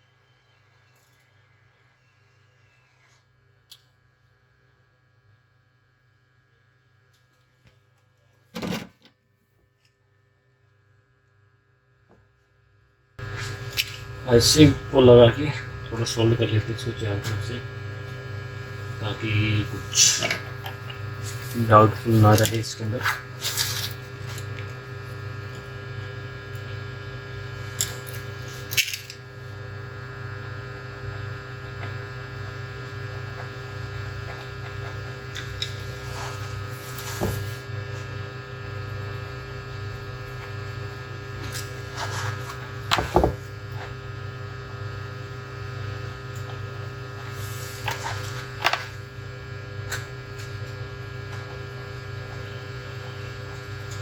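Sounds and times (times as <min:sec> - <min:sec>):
electrical hum: 0:13.2 - 0:54.0.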